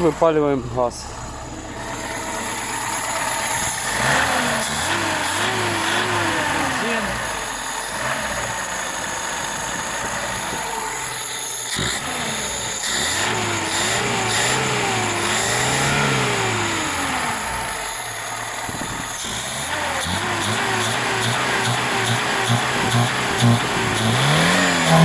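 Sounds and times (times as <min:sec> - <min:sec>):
car engine surging: 0:00.0 - 0:25.0.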